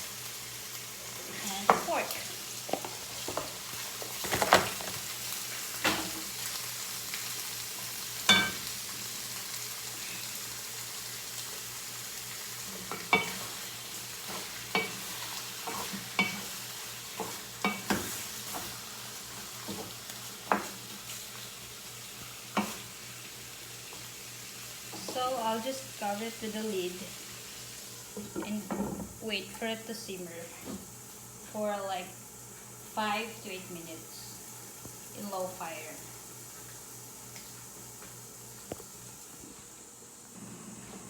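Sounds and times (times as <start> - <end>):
meat sizzling in oil: 0.0 - 28.4.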